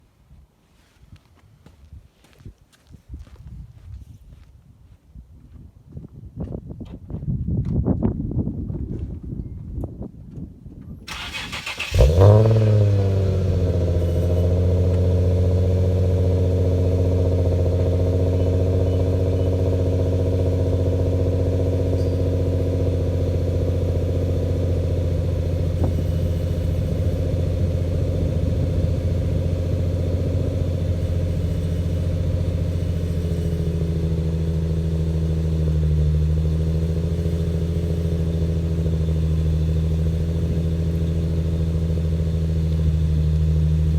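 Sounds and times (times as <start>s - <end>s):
car engine starting and idling: 11.1s - 43.9s.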